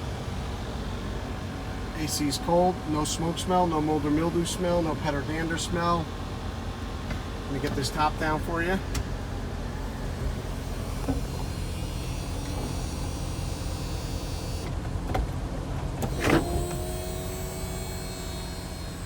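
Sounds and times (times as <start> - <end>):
electric motors whining: 8.8 - 19.0.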